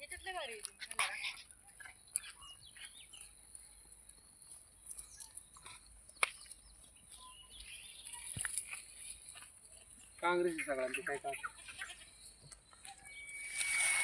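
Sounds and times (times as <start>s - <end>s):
faint bird chirps: 1.5s - 9.4s, 10.0s - 14.0s
steady high hiss: 13.1s - 14.0s.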